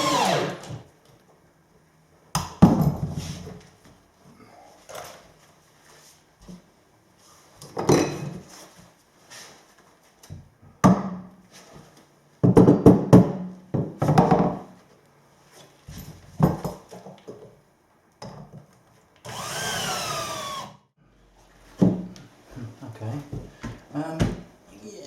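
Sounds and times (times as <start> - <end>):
power drill whirring: 0.0 - 0.8, 19.2 - 20.8
wooden knocks and clunks: 21.8 - 22.2.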